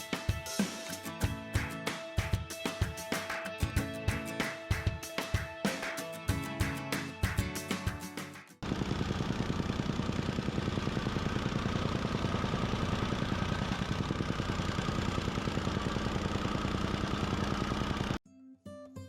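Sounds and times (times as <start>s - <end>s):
heavy machinery engine running: 8.6s - 18.2s.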